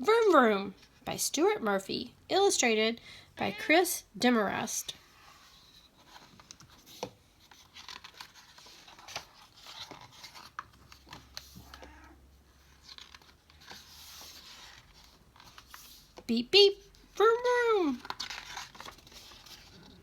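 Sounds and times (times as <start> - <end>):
paper pages rustling: 5.0 - 11.9, 12.5 - 17.1, 17.8 - 20.0.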